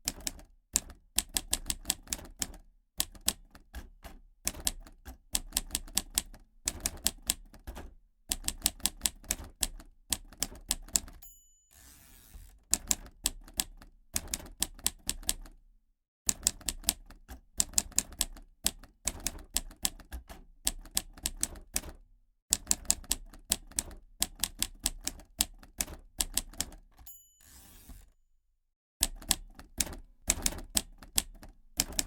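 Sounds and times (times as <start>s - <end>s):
typewriter key strikes: 0.0s - 11.5s, 29.0s - 32.0s
typewriter margin bell: 11.0s - 12.4s, 27.0s - 28.1s
typewriter carriage return slide: 11.0s - 13.0s, 26.5s - 28.2s.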